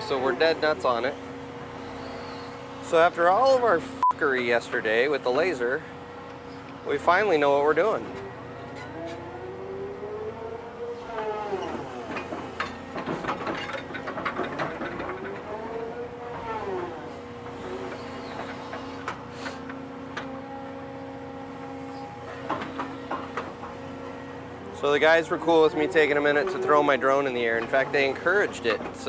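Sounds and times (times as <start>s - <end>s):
excavator engine and hydraulics: 0.0s - 29.0s
metal clanks and knocks: 11.2s - 20.3s, 21.7s - 24.3s, 25.3s - 29.0s.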